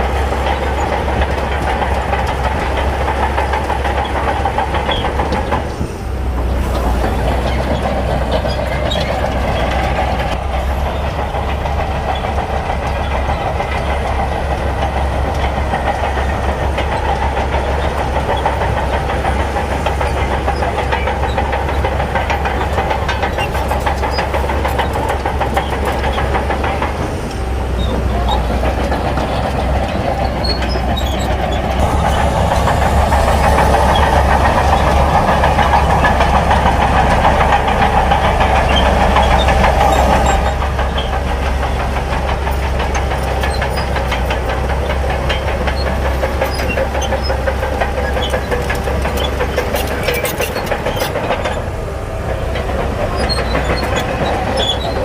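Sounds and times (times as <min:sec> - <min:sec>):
bulldozer diesel engine: 0:00.0 - 0:55.0
steel tracks clanking: 0:00.0 - 0:55.0.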